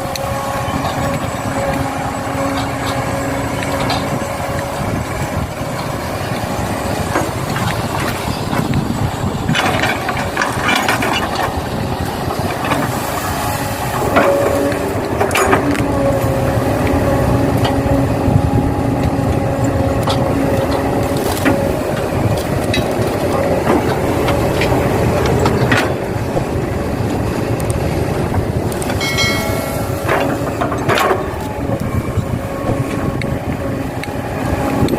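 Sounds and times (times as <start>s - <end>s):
excavator engine running: 0.0s - 34.9s
pitched whine: 0.0s - 34.9s
knocks and clatters: 28.8s - 31.8s.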